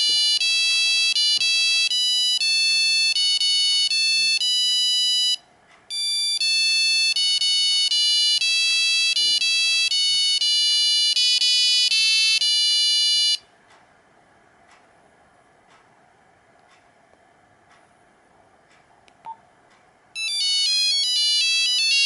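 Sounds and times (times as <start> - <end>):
monophonic phone ringtone: 0.0 - 13.4, 20.2 - 22.0.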